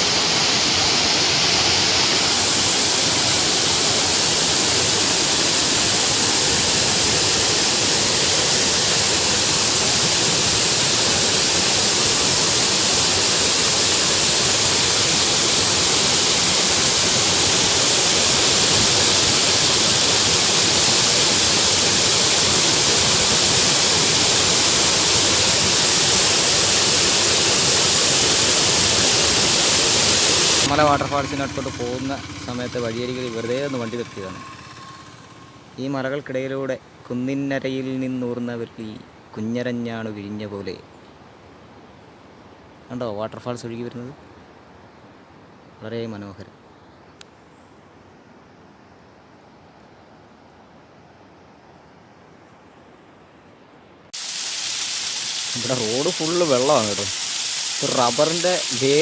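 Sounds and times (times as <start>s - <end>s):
mountain stream rushing: 0.0s - 35.8s, 54.1s - 59.0s.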